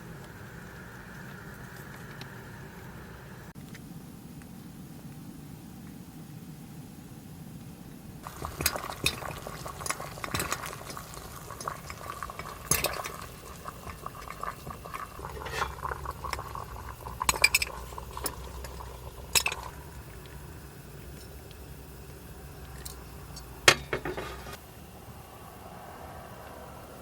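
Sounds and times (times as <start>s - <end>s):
low hum: 0.0s - 4.7s, 8.2s - 27.0s
food sizzling hiss: 8.2s - 27.0s
utensils and dishes clinking: 15.2s - 16.4s, 17.2s - 19.7s.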